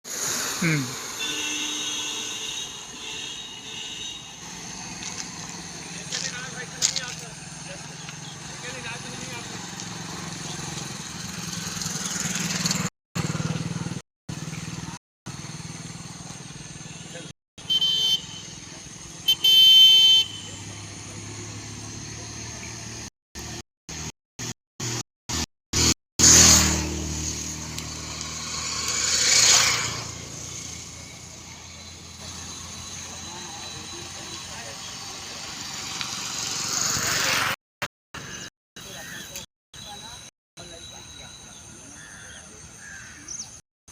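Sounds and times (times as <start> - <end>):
small engine running: 4.5 - 17.3, 26.8 - 37.6.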